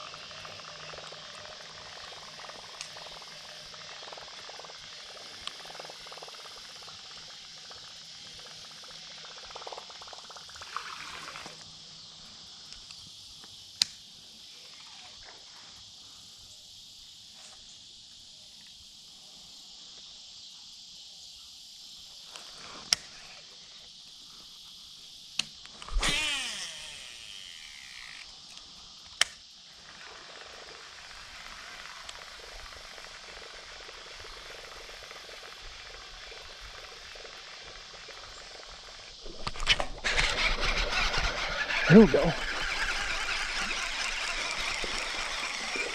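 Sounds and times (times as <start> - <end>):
insects chorus: 0.0 - 45.9
brief whirring: 25.8 - 28.3, 39.4 - 45.9
sharp clicks: 39.4 - 45.9.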